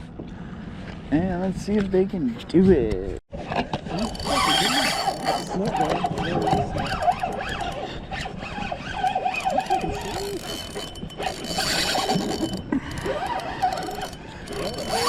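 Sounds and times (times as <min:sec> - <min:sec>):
fishing reel drag ratcheting: 0:03.9 - 0:15.0.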